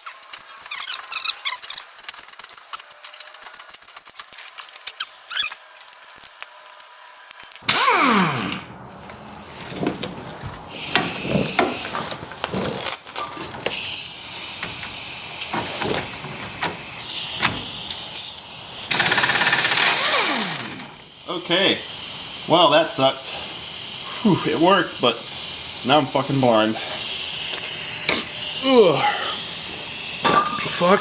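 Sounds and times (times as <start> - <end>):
stuck bolt squealing: 7.6 - 18.0.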